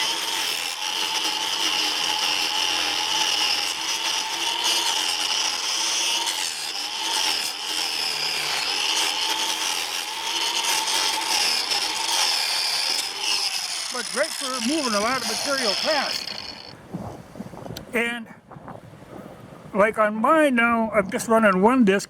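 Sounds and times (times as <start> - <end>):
angle grinder cutting wood: 0.0 - 16.8.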